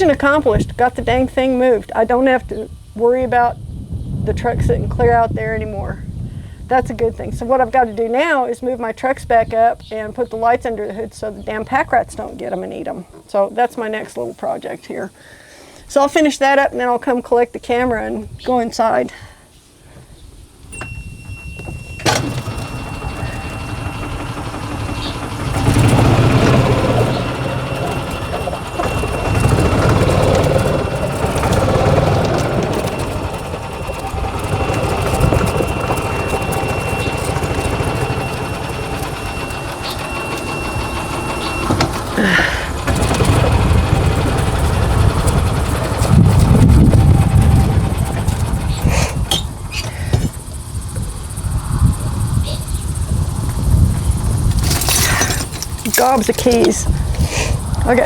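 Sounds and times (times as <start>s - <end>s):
truck engine running: 20.4s - 58.0s
thin steady high tone: 20.7s - 42.3s
short squeak: 20.8s - 42.1s, 48.8s - 50.4s.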